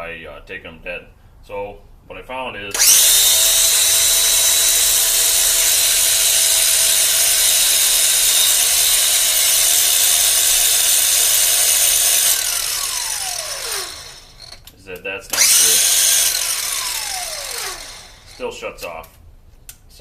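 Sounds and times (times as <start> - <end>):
angle grinder whining: 2.7 - 14.7, 15.3 - 18.6.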